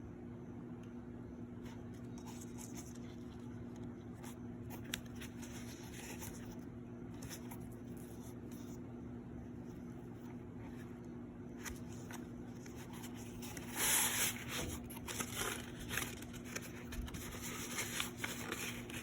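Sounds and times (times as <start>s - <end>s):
steady low hum: 0.0s - 19.0s
rustling packaging: 11.6s - 19.0s.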